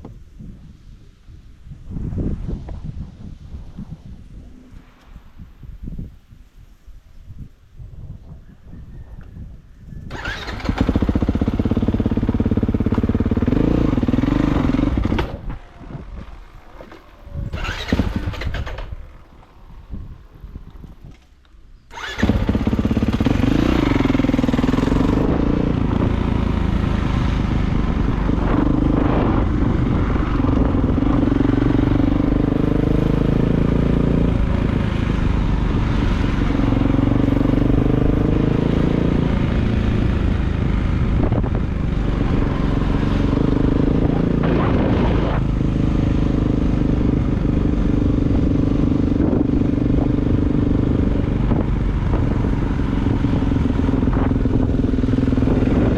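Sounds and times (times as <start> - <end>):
dirt bike engine revving: 10.1 - 15.5, 16.2 - 19.3, 21.9 - 55.9.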